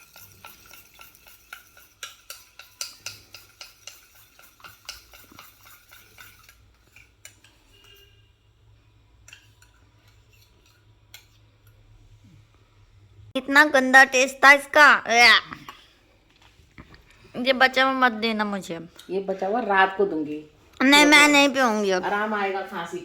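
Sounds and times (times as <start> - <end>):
spoon clinking against container: 0.0 - 8.2.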